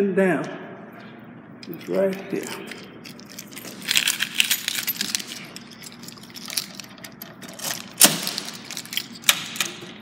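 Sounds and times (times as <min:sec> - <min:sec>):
packages rustling: 0:01.8 - 0:09.2
metal locker clicks: 0:07.0 - 0:10.0.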